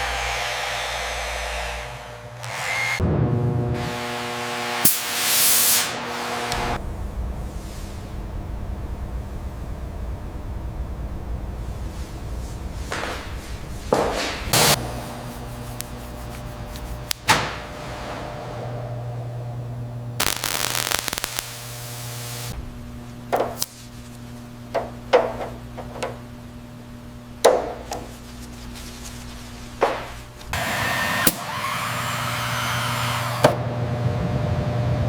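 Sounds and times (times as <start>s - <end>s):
steady low hum: 6.3s - 30.6s.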